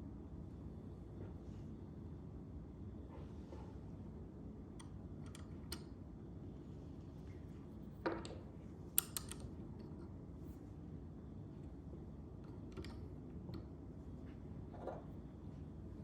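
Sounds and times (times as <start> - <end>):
low room hum: 0.0 - 16.0
clicks of parts being fitted: 9.0 - 9.5.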